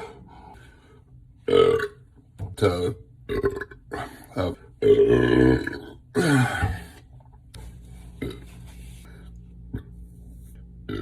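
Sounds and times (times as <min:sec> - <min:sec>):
man belching: 0:04.8 - 0:06.8.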